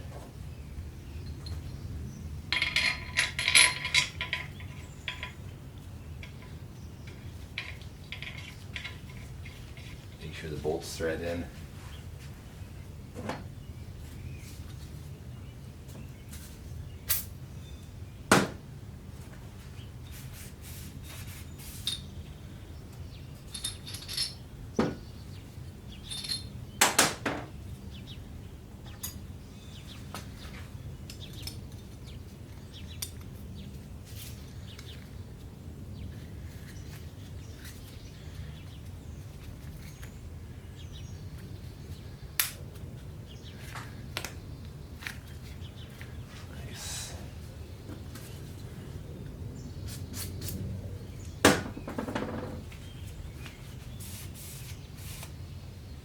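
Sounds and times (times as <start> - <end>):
low steady hum: 0.0 - 56.0
metallic clinks of tools and parts: 2.5 - 5.5, 6.2 - 10.2, 21.8 - 22.3, 23.4 - 24.4, 25.9 - 26.6
sharp knocks: 18.3 - 18.6, 51.4 - 52.7.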